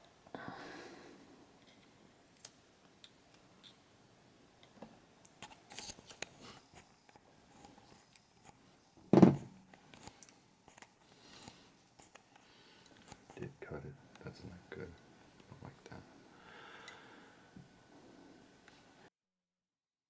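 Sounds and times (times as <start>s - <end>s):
loud thump: 9.1s - 9.5s.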